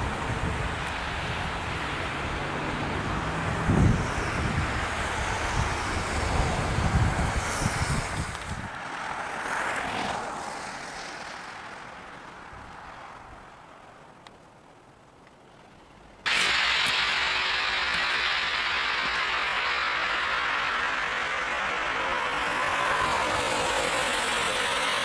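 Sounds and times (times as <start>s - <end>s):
wind buffeting microphone: 0.0s - 8.9s
passing vehicle rush: 0.0s - 13.8s, 16.3s - 25.0s.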